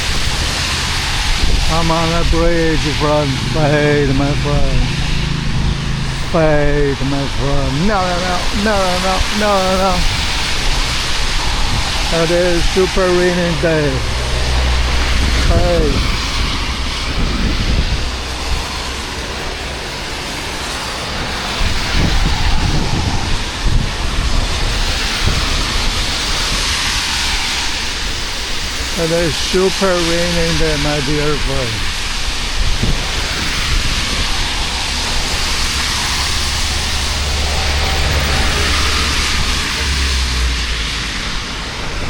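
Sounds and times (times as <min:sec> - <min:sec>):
low rumble: 0:00.0 - 0:24.6
heavy rain falling: 0:00.0 - 0:42.0
wind buffeting microphone: 0:00.0 - 0:42.0.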